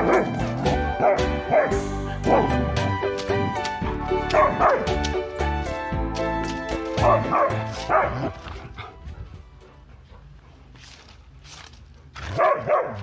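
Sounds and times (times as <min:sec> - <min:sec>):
dog barking: 0:00.0 - 0:00.4, 0:01.0 - 0:02.6, 0:04.2 - 0:04.9, 0:07.0 - 0:08.9, 0:12.3 - 0:13.0
background music: 0:00.0 - 0:10.0.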